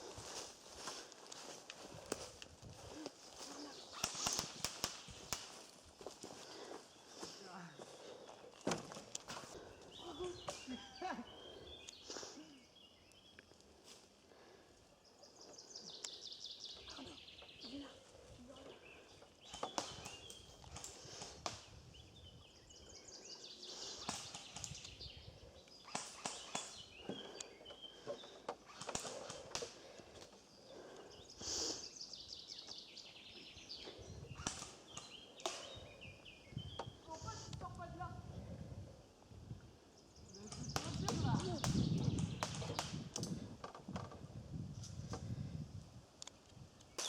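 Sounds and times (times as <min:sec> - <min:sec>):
footsteps crunching dry leaves: 0:00.0 - 0:08.3
small birds chirping: 0:00.0 - 0:47.0
songbird singing: 0:00.0 - 0:47.0.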